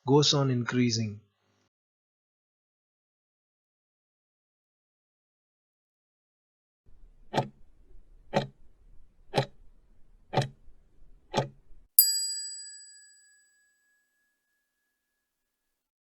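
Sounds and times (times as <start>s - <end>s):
clock ticks: 7.3s - 7.6s, 8.3s - 8.5s, 9.3s - 9.5s, 10.3s - 10.6s
bright bell ding: 12.0s - 14.2s.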